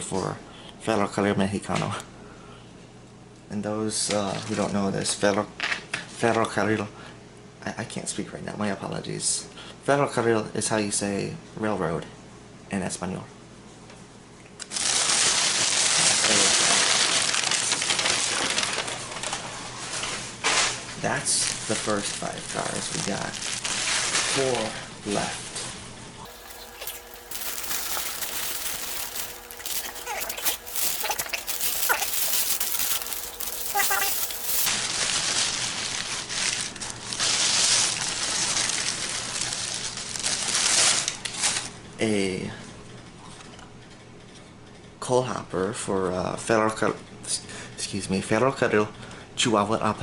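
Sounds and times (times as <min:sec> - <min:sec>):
wrapping material crinkling: 0:26.3 - 0:34.7.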